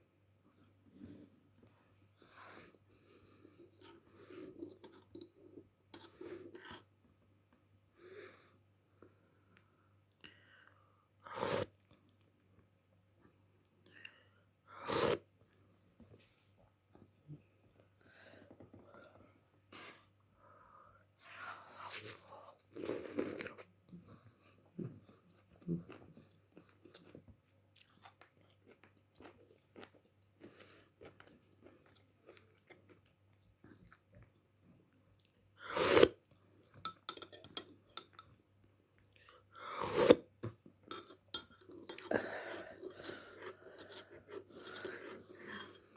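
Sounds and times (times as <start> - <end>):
person chewing food: 22.7 - 34.4.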